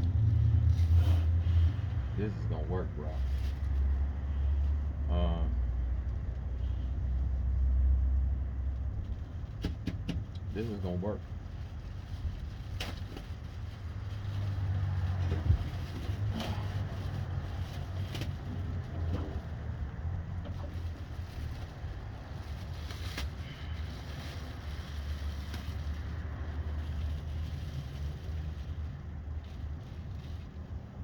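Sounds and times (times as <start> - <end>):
low rumble: 0.0 - 9.4.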